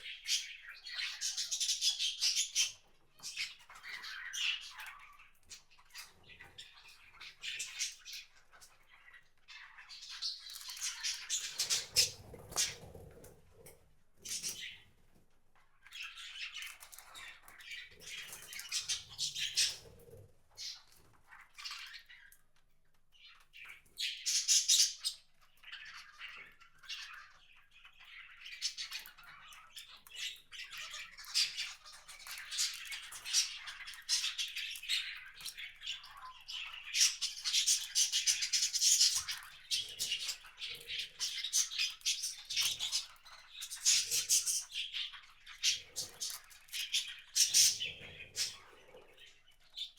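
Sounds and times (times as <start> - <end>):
small birds chirping: 0.0 - 49.9.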